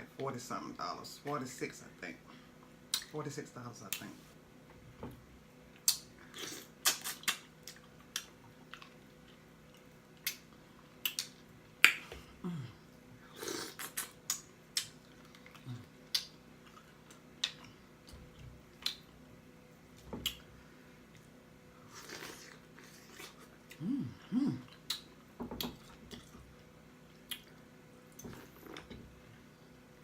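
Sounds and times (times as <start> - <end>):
lip pops: 6.8 - 7.5
wet lip smacks: 6.8 - 8.3, 13.8 - 15.0.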